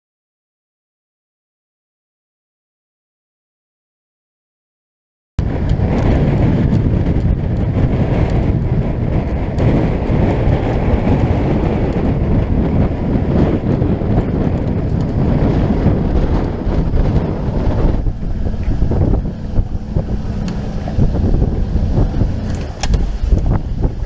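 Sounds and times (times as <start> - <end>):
sharp ticks: 5.4 - 23.6
motorboat engine rumble: 5.4 - 24.0
rough water: 5.4 - 24.0
wind on microphone: 5.4 - 24.0.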